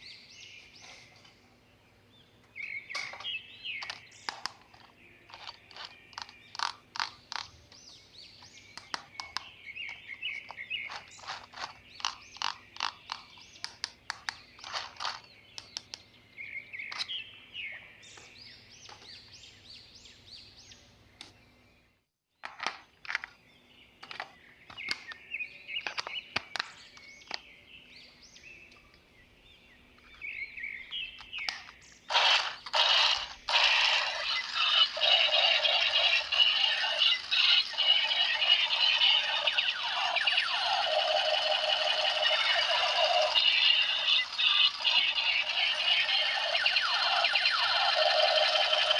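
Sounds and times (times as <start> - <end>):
plastic toy parts clicking: 3.8 - 7.5.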